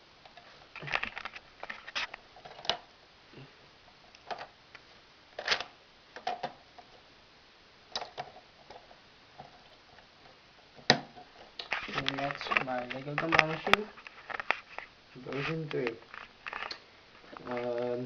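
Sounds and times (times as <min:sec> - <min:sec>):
plastic bricks clicking: 0:07.9 - 0:08.9.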